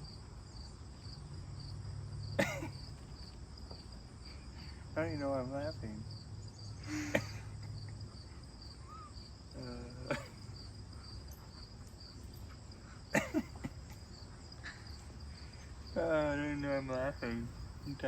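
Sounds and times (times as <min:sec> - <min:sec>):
crickets chirping: 0:00.0 - 0:18.0
man laughing: 0:06.8 - 0:08.1, 0:09.6 - 0:10.5, 0:13.1 - 0:15.2.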